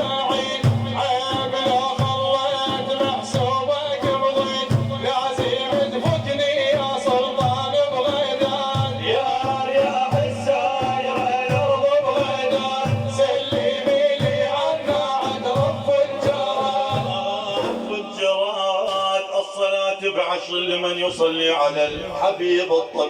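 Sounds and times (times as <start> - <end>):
low drum beat: 0.0 - 18.2
religious praise music: 0.0 - 23.0.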